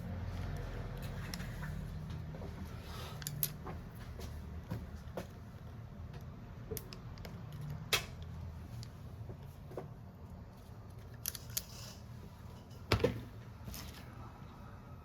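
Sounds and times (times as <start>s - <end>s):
small tools clicking and tapping: 3.2s - 3.8s, 6.1s - 9.5s.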